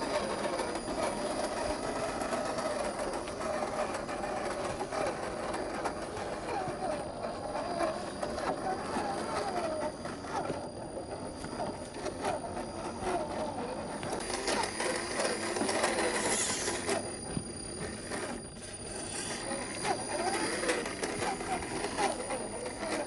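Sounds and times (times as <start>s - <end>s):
electric motor whining: 0.0s - 23.0s
clicks and knocks on rough ground: 13.9s - 23.0s.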